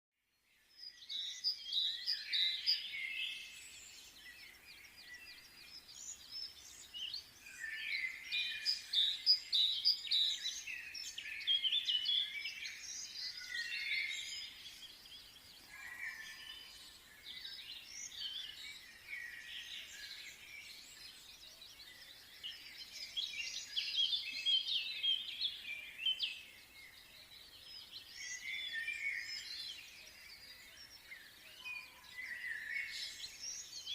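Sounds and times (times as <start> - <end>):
small birds chirping: 0.2 - 33.9.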